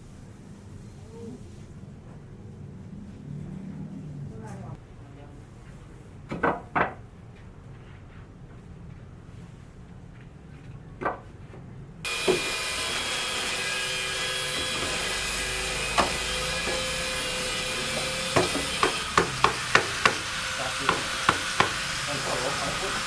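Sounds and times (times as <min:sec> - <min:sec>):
hammer striking wood: 0:12.1 - 0:22.1.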